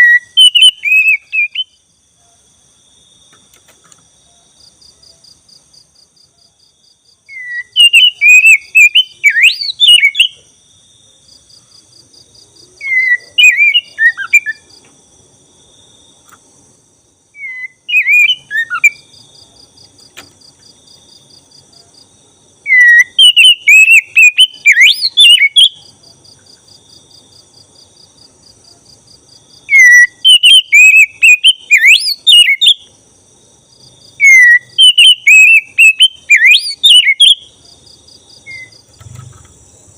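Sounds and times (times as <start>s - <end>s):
magpie-robin singing: 0.0s - 1.8s, 7.3s - 10.4s, 12.8s - 14.7s, 17.4s - 19.1s, 22.7s - 25.8s, 29.7s - 32.9s, 34.2s - 37.5s, 38.5s - 38.8s
high pulsing insect trill: 0.0s - 39.9s.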